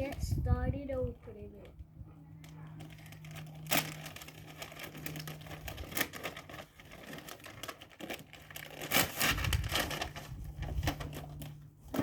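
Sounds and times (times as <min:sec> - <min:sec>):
packaging crinkling and rustling: 0:02.4 - 0:12.0
packaging being torn open: 0:02.9 - 0:11.6.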